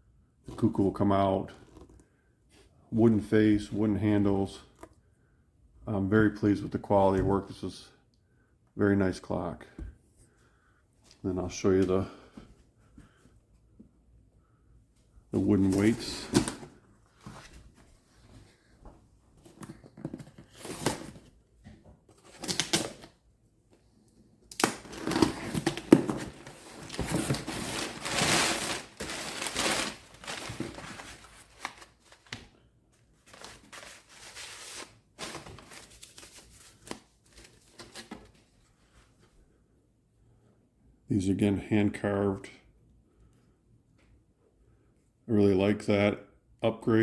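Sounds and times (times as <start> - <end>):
packing material crinkling: 24.5 - 32.5.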